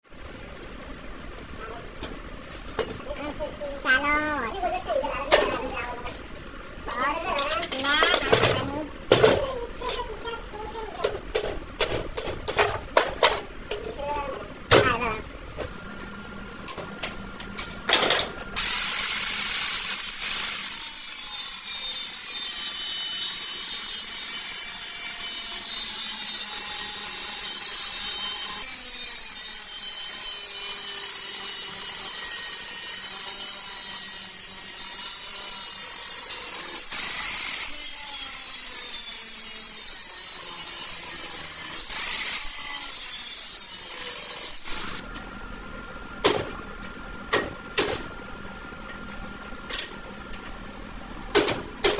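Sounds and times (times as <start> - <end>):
power tool scraping: 18.6 - 45.0.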